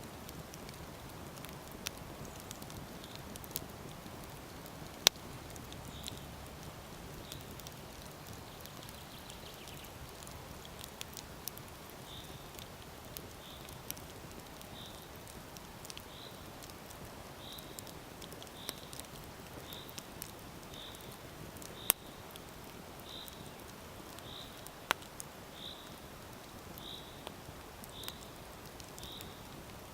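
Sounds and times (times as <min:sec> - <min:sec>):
campfire crackling: 0:00.0 - 0:29.9.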